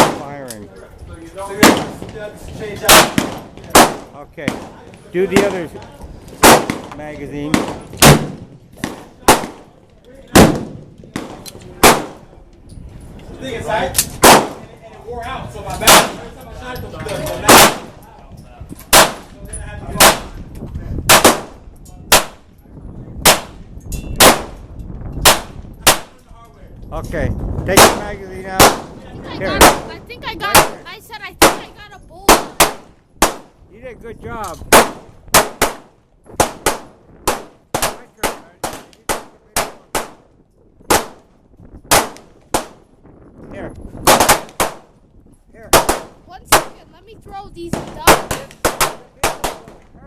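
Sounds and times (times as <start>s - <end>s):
gunshots: 0.0s - 0.3s, 1.5s - 5.8s, 6.4s - 12.3s, 14.0s - 14.7s, 15.8s - 16.3s, 17.3s - 18.0s, 18.9s - 20.4s, 21.1s - 22.4s, 23.2s - 23.6s, 24.2s - 24.6s, 25.2s - 26.2s, 27.7s - 30.8s, 31.4s - 33.6s, 34.7s - 41.3s, 41.9s - 42.8s, 44.0s - 44.9s, 45.7s - 46.8s, 47.7s - 49.9s
pistol shots: 1.6s - 2.1s, 2.8s - 5.7s, 6.4s - 9.7s, 10.3s - 12.3s, 14.0s - 14.7s, 15.8s - 16.3s, 17.4s - 17.9s, 18.9s - 19.3s, 20.0s - 20.3s, 21.1s - 22.4s, 23.2s - 23.6s, 24.2s - 24.6s, 25.2s - 26.2s, 28.6s - 28.9s, 32.3s - 33.5s, 34.7s - 40.2s, 40.9s - 41.2s, 41.9s - 42.8s, 44.0s - 44.9s, 45.7s - 46.8s, 47.7s - 49.8s.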